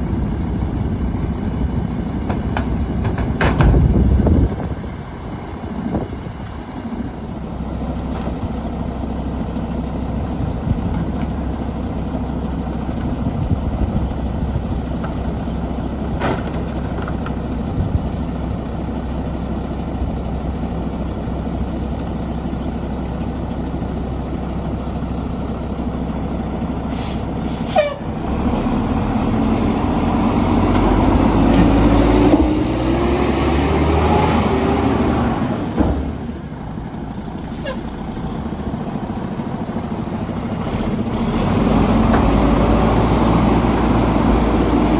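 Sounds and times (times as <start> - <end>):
garbage truck diesel engine: 0.0 - 44.9
air hiss: 26.9 - 27.8.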